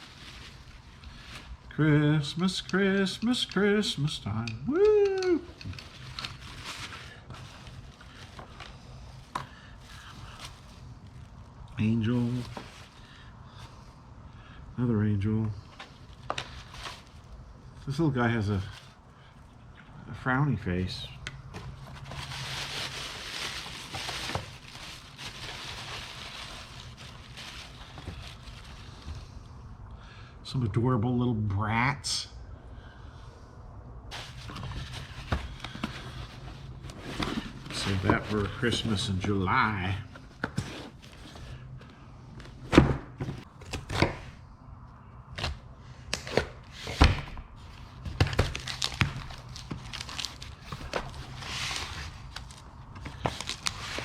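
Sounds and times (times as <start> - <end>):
wrapping rustling: 0.0 - 1.8, 5.0 - 13.2, 15.7 - 17.4, 21.4 - 29.2, 34.1 - 39.5, 47.8 - 54.0.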